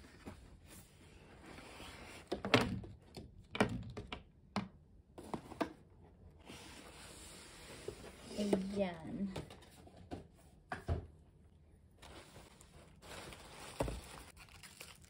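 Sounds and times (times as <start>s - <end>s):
packaging rustling: 12.0s - 15.0s.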